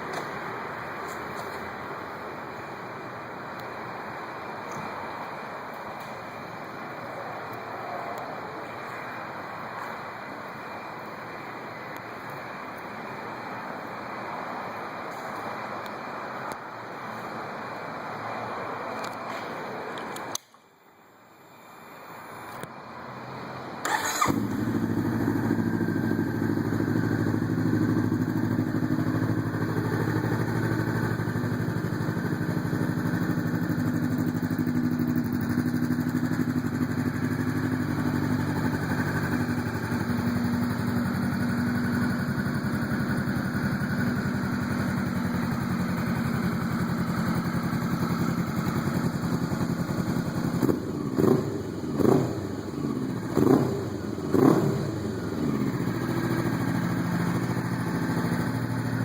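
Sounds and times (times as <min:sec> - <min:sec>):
motorcycle engine idling and revving: 0:23.8 - 0:59.0.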